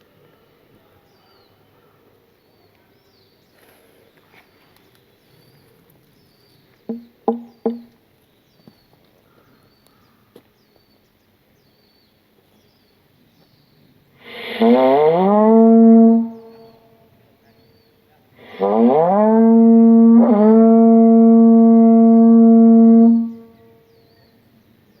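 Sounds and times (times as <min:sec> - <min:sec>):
quiet forest ambience: 0:00.0 - 0:15.3, 0:16.2 - 0:25.0
faint knocks: 0:06.9 - 0:08.0
short low toots: 0:14.2 - 0:16.6, 0:18.4 - 0:23.4.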